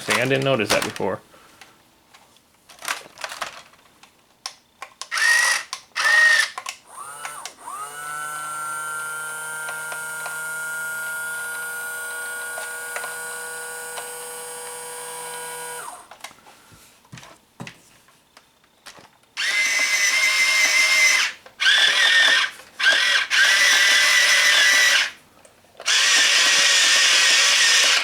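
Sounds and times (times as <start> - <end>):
electric motor whine: 6.0 - 16.1, 19.4 - 25.2, 25.9 - 28.0.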